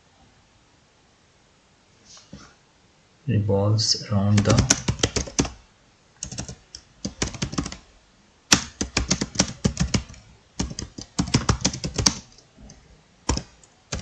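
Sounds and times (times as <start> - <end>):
laptop keyboard typing: 4.3 - 5.6, 6.2 - 7.8, 8.5 - 14.0.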